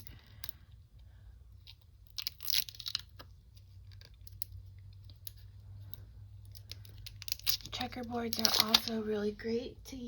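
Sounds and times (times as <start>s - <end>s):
plastic packaging crinkling: 2.0s - 4.4s, 6.6s - 9.2s.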